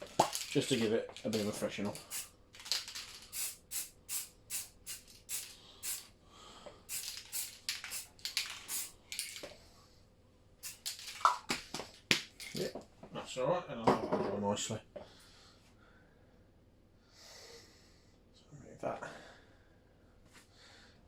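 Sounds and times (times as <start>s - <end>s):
spray can hissing: 2.0s - 6.1s, 6.9s - 9.4s, 10.6s - 11.3s.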